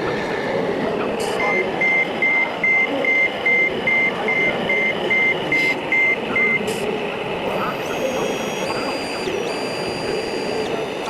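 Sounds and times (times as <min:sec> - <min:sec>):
steady background noise: 0:00.0 - 0:11.0
reversing beeper: 0:01.4 - 0:06.7, 0:07.5 - 0:11.0.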